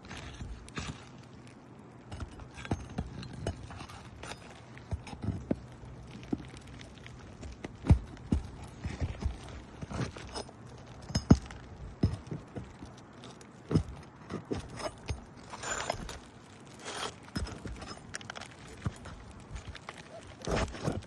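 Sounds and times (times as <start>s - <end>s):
hand tools knocking and scraping: 7.7s - 12.9s, 13.7s - 16.2s, 16.8s - 19.7s.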